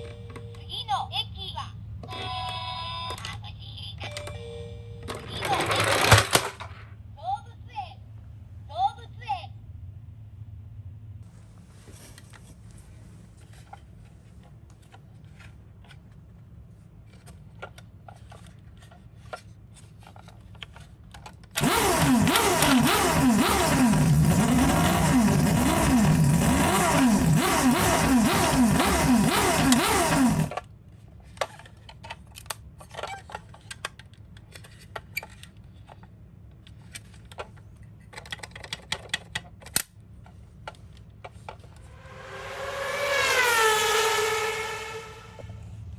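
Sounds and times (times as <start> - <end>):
light clicks and clatter: 11.9 - 21.6, 30.6 - 41.8.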